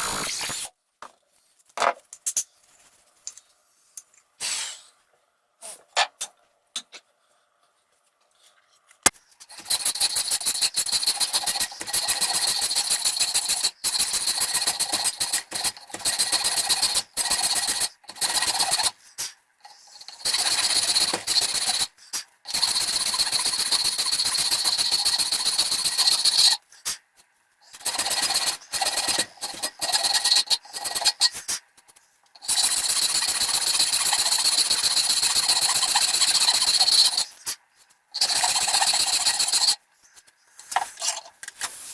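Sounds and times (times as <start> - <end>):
power tool grinding wood: 0.0 - 0.6.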